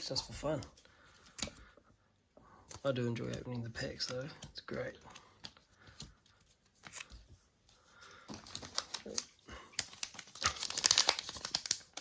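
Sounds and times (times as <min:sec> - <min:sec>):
plastic wrapper crinkling and tearing: 0:08.3 - 0:12.0.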